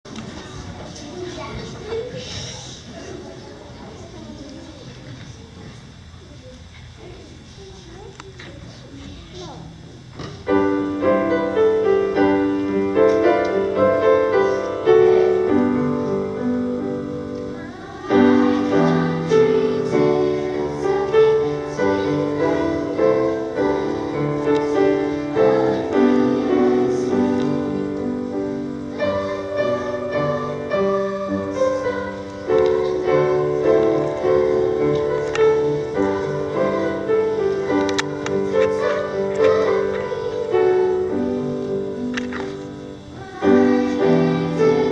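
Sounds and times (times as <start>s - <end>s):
piano music: 10.5s - 44.9s.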